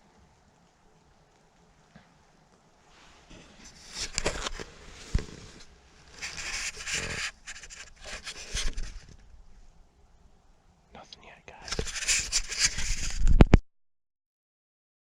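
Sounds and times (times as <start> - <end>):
rustling and scraping: 2.8 - 9.7, 11.5 - 13.6.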